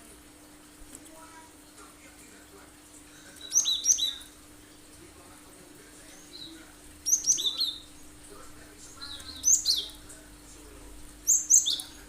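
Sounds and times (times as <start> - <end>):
tit calling in sharp chirps: 11.2 - 12.0.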